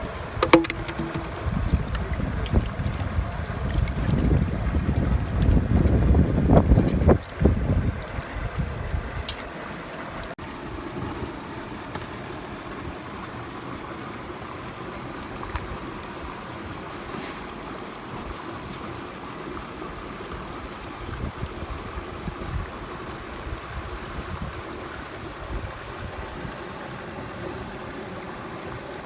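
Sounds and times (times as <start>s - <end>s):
wind buffeting microphone: 0.0s - 9.3s, 21.0s - 26.6s
mountain stream rushing: 0.0s - 29.0s.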